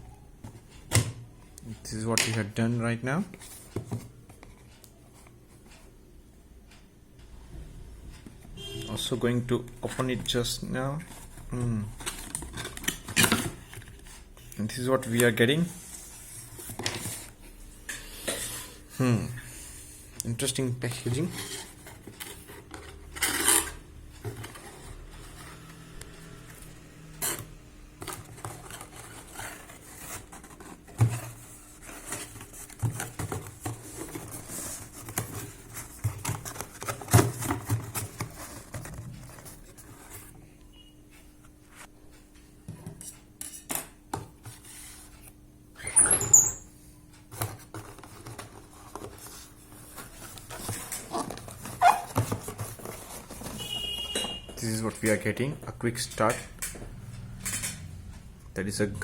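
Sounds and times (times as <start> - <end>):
rustling and scraping: 15.0 - 19.6, 20.5 - 40.4, 47.3 - 58.2
hands handling cardboard box: 27.2 - 40.3, 47.3 - 54.7.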